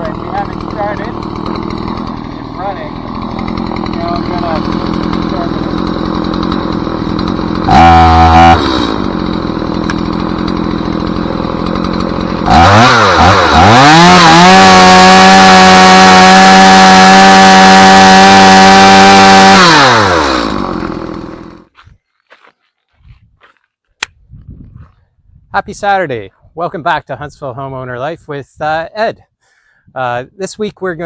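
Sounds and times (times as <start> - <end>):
two-stroke chainsaw running: 0.0 - 21.7.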